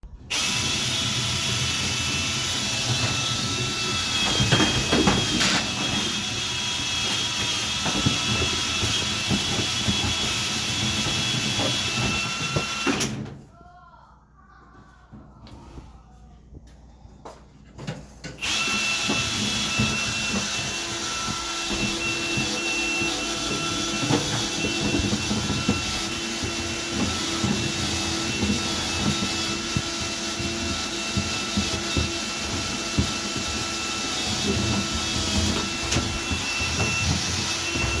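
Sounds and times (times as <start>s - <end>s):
vacuum motor whining: 0.3s - 13.2s, 18.4s - 38.0s
knocks and rattles: 1.8s - 13.4s, 17.7s - 38.0s.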